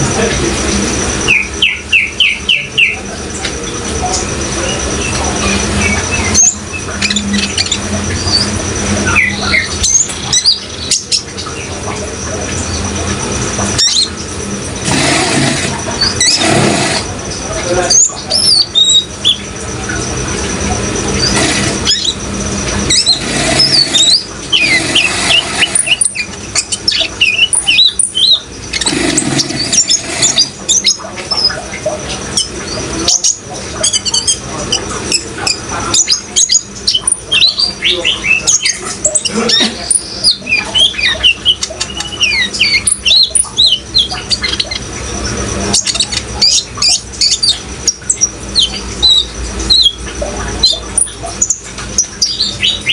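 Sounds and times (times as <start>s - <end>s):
running water: 3.1s - 52.9s
bird chirping: 22.9s - 31.6s.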